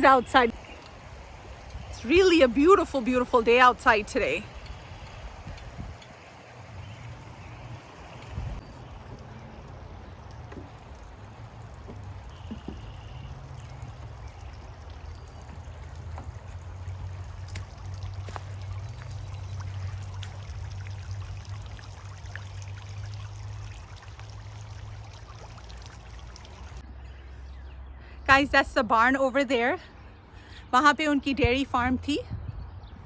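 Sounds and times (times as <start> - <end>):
wind buffeting microphone: 0.0 - 24.8, 32.2 - 33.0.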